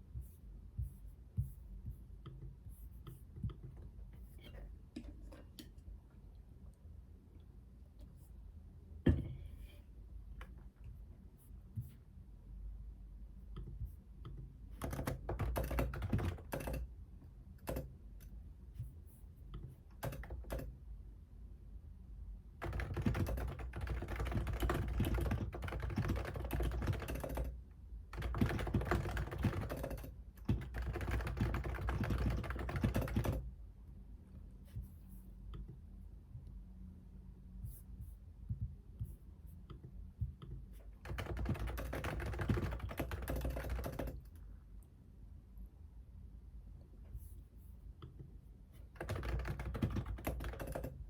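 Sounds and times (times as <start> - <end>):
typing on computer keyboard: 14.3 - 16.9, 17.6 - 18.0, 19.6 - 20.8, 22.6 - 33.5, 40.4 - 44.4, 48.9 - 51.0.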